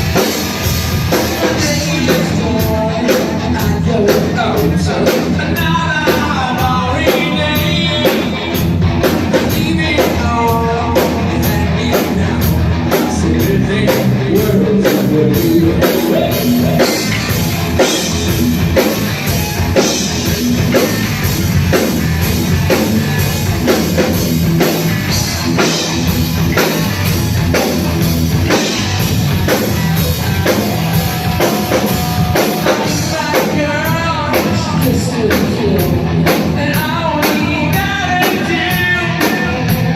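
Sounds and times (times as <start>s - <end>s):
drum kit steady beat: 0.0s - 39.9s
live rock band playing: 0.0s - 39.9s
person singing: 1.1s - 8.6s, 9.3s - 18.2s, 29.5s - 39.9s.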